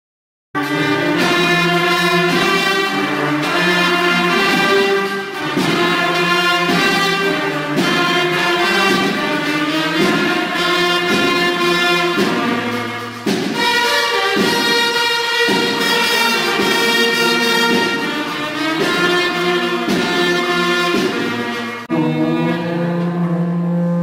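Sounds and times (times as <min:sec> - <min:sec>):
brass instruments playing chords: 0:00.6 - 0:24.0.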